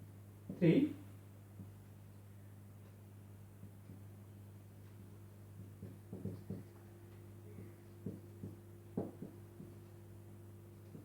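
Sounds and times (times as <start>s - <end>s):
low electrical hum: 0.0s - 11.0s
taps and scuffs writing on board: 4.9s - 6.9s, 7.5s - 10.0s.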